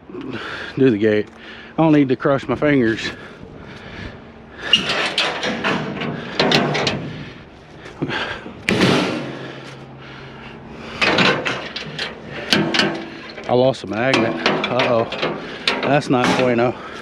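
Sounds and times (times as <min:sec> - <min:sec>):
trailer gate clanking and scraping: 0:04.0 - 0:17.0.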